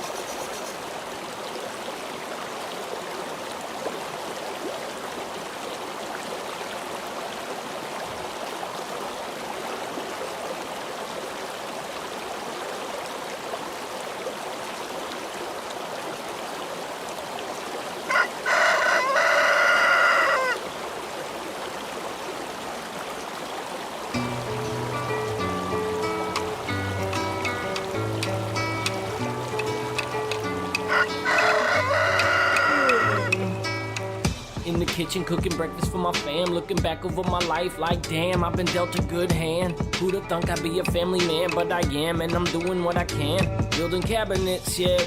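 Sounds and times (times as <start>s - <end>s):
rooster crowing: 18.0s - 20.7s, 30.7s - 33.6s
steady background hiss: 20.6s - 30.7s.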